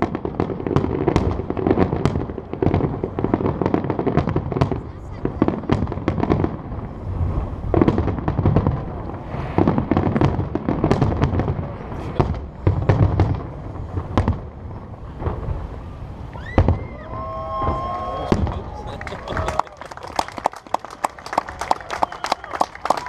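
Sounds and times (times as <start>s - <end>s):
deep fireworks booms: 0.0s - 21.6s
fireworks bangs and crackles: 0.0s - 23.0s.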